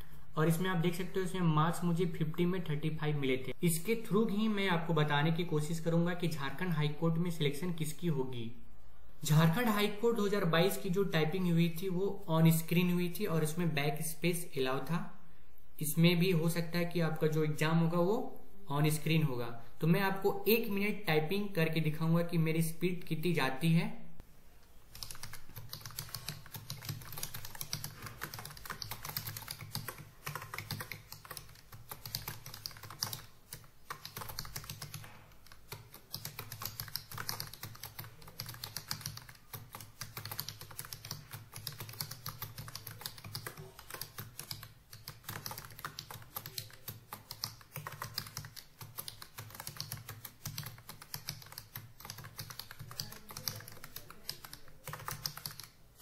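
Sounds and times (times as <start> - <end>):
fast typing on keyboard: 24.9 - 56.0.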